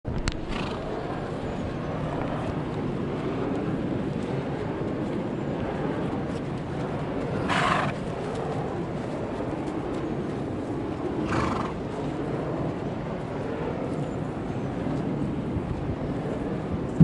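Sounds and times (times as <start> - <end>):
steady low rumble: 0.0 - 17.0
horse snoring: 11.2 - 11.8.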